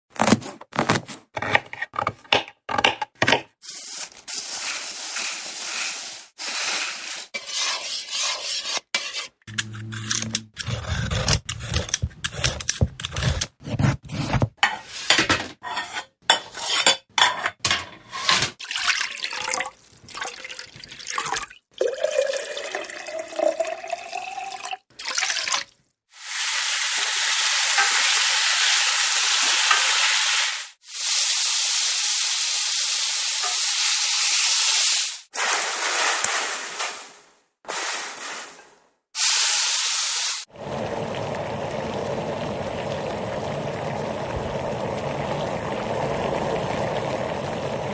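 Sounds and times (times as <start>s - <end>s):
sizzling hiss of frying: 3.6s - 7.6s, 26.1s - 42.1s
dishes and cutlery clattering: 14.6s - 18.6s
stirring and splashing water: 18.6s - 22.0s.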